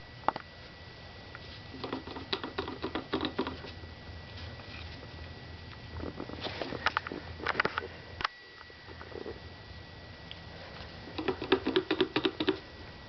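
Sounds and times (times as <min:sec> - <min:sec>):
low steady hum: 0:00.0 - 0:13.0
cv joint clicking: 0:01.8 - 0:03.6, 0:11.1 - 0:12.6.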